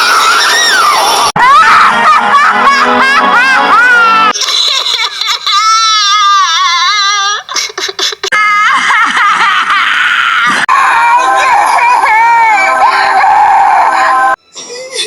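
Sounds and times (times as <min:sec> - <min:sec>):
woman laughing: 0:01.4 - 0:10.5.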